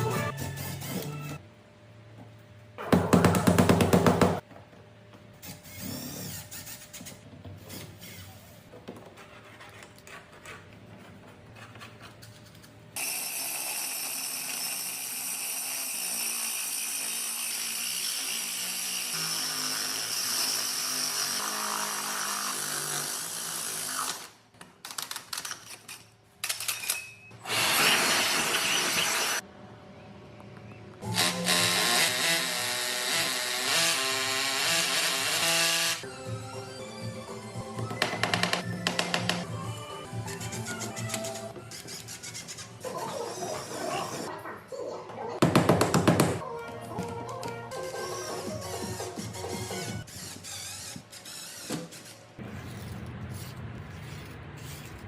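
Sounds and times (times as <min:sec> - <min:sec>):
power drill running: 0:27.4 - 0:29.4.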